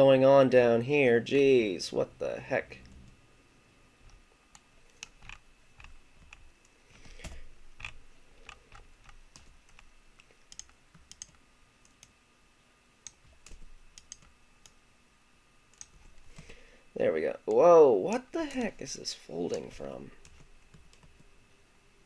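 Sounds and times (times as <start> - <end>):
computer mouse clicking: 4.0 - 12.2, 13.0 - 14.8, 15.7 - 16.5, 19.5 - 21.3
keyboard keys clicking: 4.9 - 12.1, 13.1 - 14.3.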